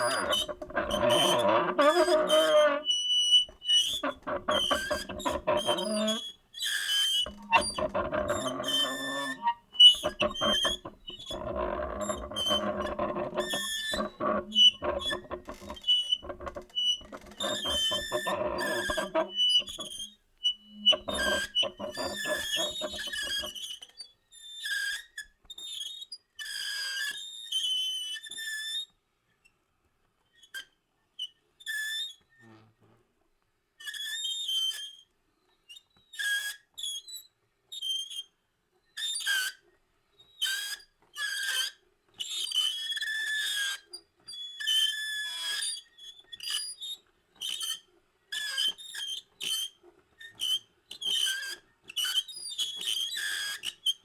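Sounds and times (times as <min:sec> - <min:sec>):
shrill squeals: 0:00.0 - 0:06.2, 0:07.2 - 0:23.5.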